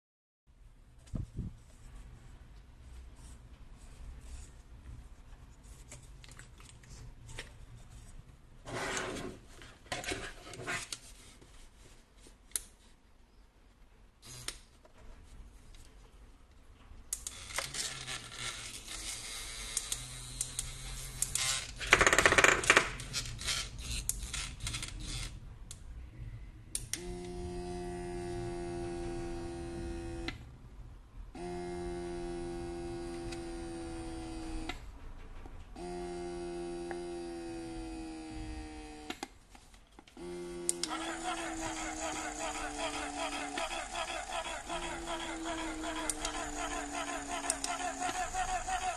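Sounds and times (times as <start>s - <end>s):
vibration motor humming: 27.0s - 30.4s, 31.4s - 34.7s, 35.8s - 39.1s, 40.2s - 48.9s
noisy mechanical running: 40.4s - 48.9s.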